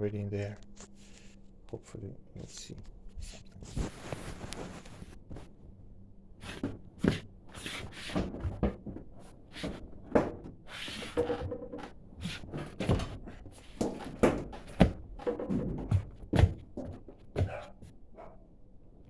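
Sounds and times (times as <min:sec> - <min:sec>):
appliance knocking and scraping: 0:06.4 - 0:18.0.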